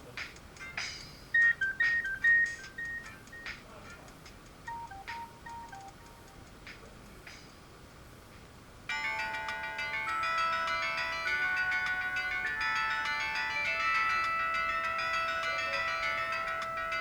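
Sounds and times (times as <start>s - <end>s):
phone ringtone melody: 4.7s - 6.4s, 8.9s - 17.0s.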